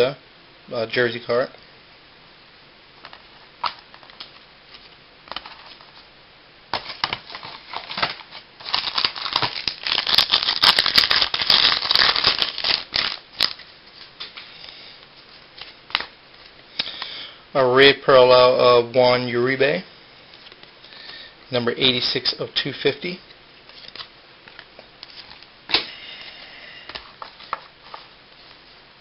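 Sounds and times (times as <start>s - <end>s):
wrapper crinkling and tearing: 6.8s - 13.7s.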